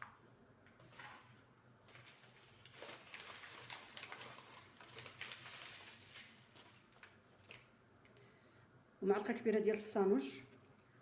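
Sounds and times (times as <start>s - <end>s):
dried herbs rustling: 0.8s - 7.7s.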